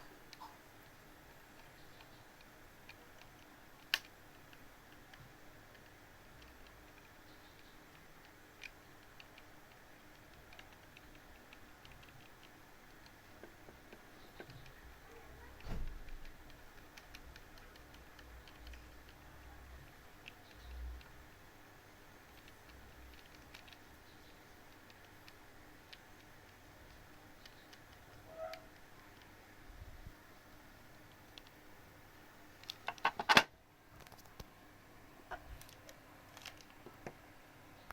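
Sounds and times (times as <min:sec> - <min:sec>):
mechanical keyboard typing: 0:01.5 - 0:21.2, 0:22.2 - 0:29.3.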